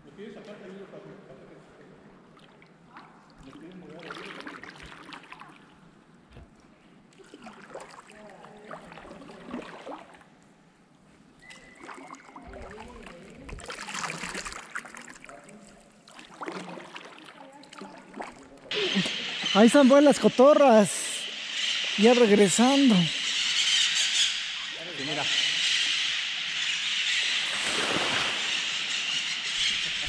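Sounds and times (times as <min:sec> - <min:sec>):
kayak paddles splashing in water: 0:27.3 - 0:30.0.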